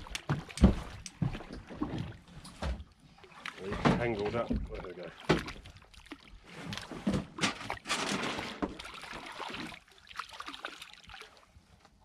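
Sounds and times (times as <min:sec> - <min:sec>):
water splashing and trickling: 0:00.0 - 0:12.0.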